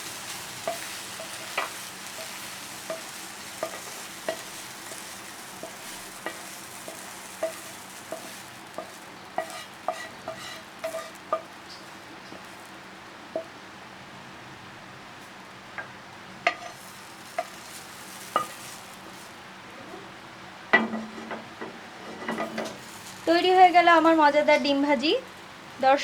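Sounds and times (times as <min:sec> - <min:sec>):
oil sizzling in a frying pan: 0:00.0 - 0:19.6
spatula scraping and tapping pan: 0:00.1 - 0:12.7, 0:16.5 - 0:18.9, 0:20.8 - 0:22.8.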